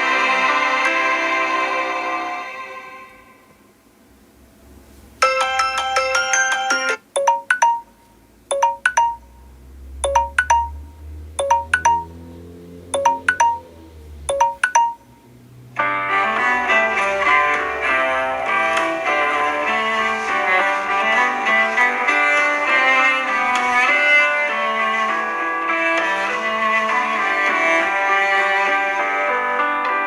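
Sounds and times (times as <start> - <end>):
bell-like ringtone chimes: 5.2 - 12.2, 13.0 - 13.7, 14.3 - 15.3
fuller ringtone tune: 5.2 - 12.2, 12.9 - 15.3
low hum: 7.8 - 15.8.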